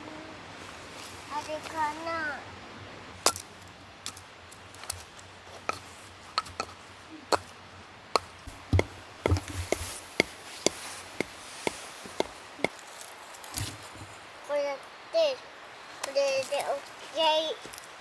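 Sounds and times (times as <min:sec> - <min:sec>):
sharp wooden knocks: 0:04.8 - 0:07.5, 0:08.2 - 0:12.8.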